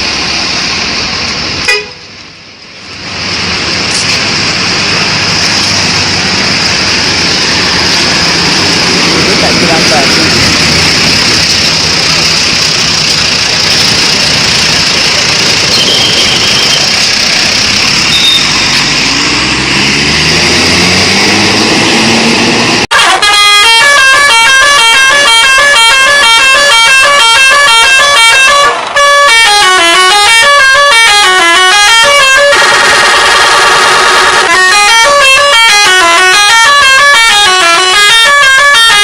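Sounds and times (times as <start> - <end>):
loud rushing noise: 0.0 - 22.9
bus musical horn tune: 1.6 - 2.1, 22.9 - 39.0.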